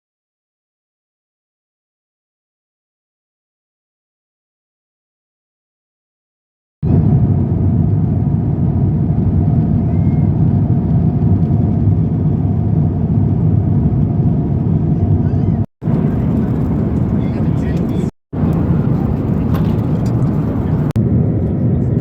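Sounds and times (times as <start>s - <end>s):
moving vehicle rumble: 6.8s - 22.0s.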